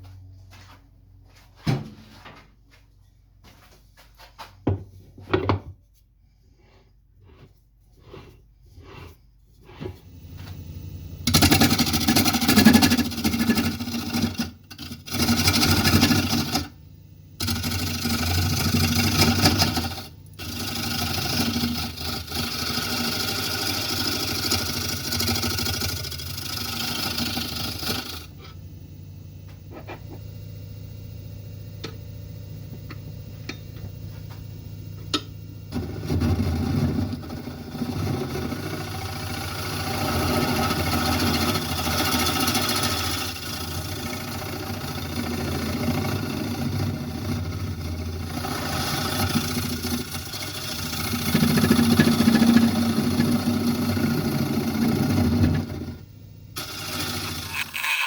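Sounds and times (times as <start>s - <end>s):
lathe humming: 6.5s - 58.0s
turning tool cutting wood on lathe: 11.2s - 16.8s, 17.4s - 28.3s, 35.7s - 56.0s, 56.6s - 58.0s.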